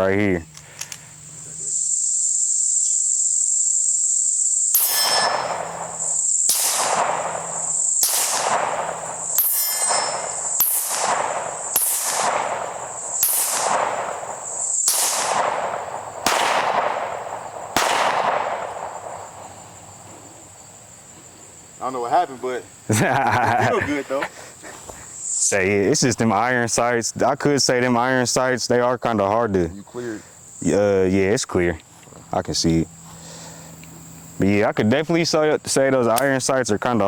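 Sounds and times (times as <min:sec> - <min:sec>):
high-pitched insect buzzing: 0:01.3 - 0:16.1
pistol shots with echo: 0:04.7 - 0:20.0.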